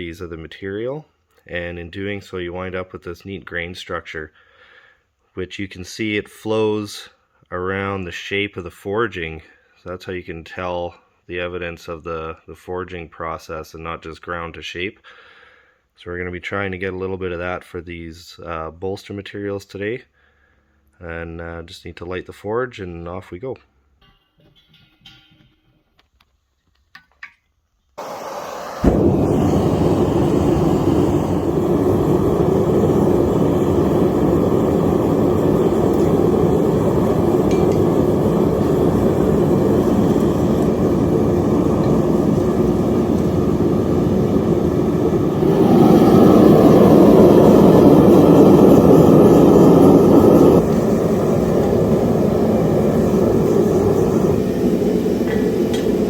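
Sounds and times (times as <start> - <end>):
forge fire rushing: 28.0 - 56.0.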